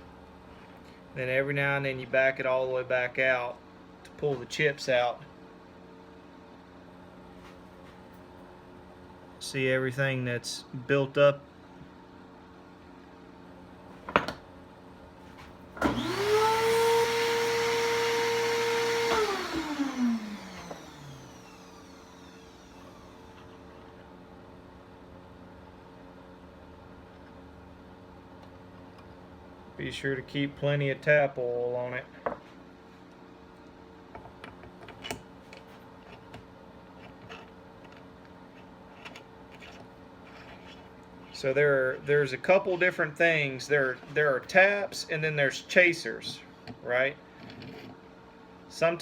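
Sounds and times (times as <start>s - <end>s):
electric motor whine: 15.8s - 23.6s.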